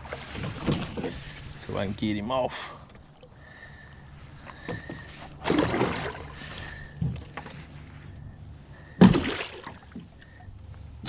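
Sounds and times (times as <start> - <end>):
scuffling in a boat: 0.0 - 11.0
knocks on a boat: 9.0 - 10.1.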